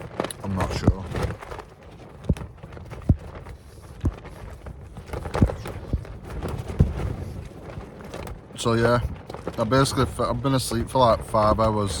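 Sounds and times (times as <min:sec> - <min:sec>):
wind buffeting a tent: 0:00.0 - 0:12.0.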